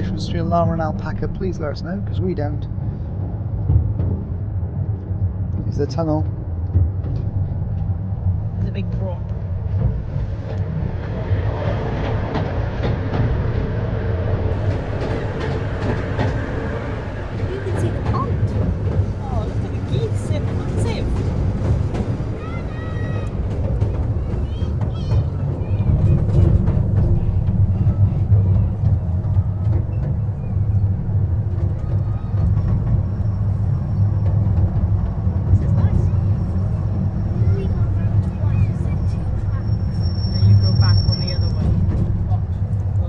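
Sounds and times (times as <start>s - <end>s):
miniature train wheels rumbling: 14.5s - 43.0s
faint clicks from rails: 14.6s - 35.8s.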